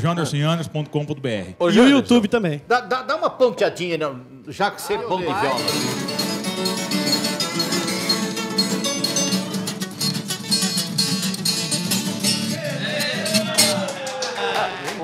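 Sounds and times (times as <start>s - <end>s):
guitar plucked rapidly: 5.4s - 13.8s.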